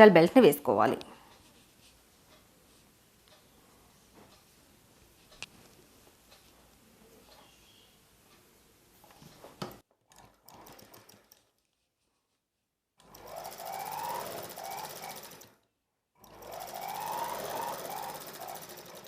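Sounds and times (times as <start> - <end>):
sewing machine stitching: 10.1 - 11.6, 13.0 - 15.6, 16.2 - 19.0.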